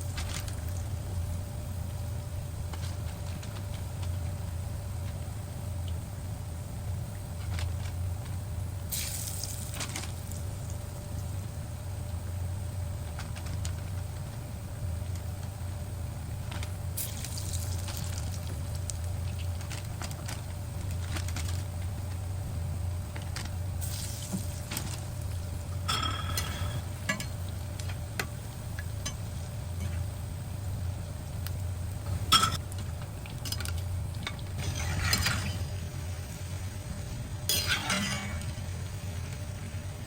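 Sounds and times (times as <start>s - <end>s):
steady low hum: 0.0s - 40.0s
metal utensil scraping a pot: 34.6s - 35.6s, 37.5s - 38.6s.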